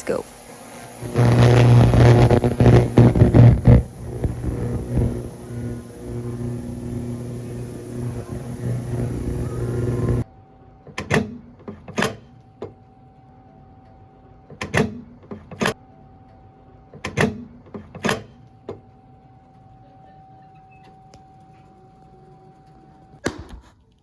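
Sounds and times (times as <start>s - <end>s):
faint steady tone: 0.0s - 10.2s.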